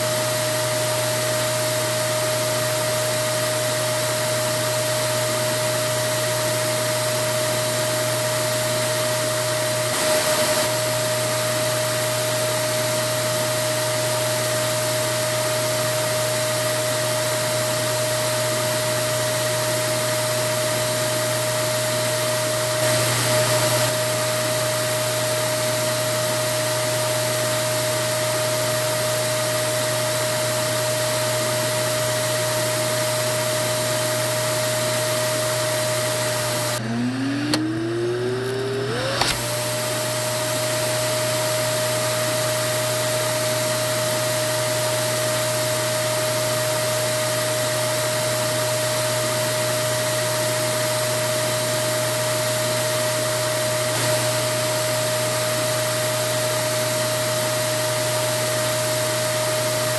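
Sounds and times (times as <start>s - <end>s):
vacuum cleaner running: 0.0s - 59.9s.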